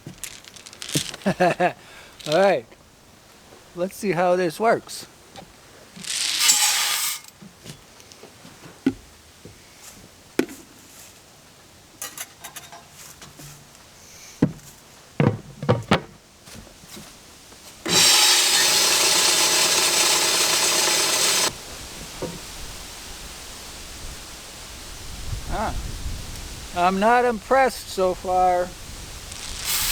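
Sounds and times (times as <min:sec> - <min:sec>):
grain grinder machine running: 0:17.9 - 0:21.6
short rush of noise: 0:29.0 - 0:29.9.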